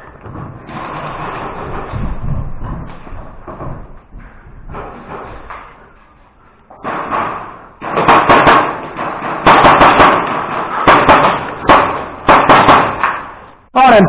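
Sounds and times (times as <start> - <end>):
airsoft guns firing: 6.8 - 13.4.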